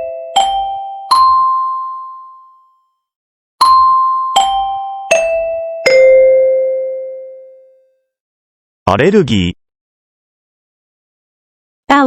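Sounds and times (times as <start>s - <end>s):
bell-like chime jingle: 0.0s - 2.9s, 3.6s - 7.8s.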